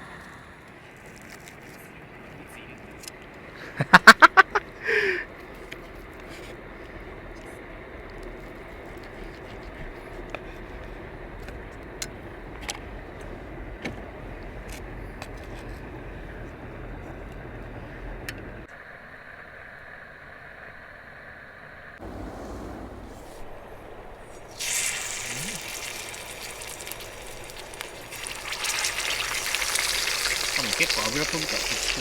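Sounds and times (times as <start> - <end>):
low rumble: 22.0 - 24.4
campfire crackling and popping: 24.2 - 32.0
pork sizzling: 24.3 - 32.0.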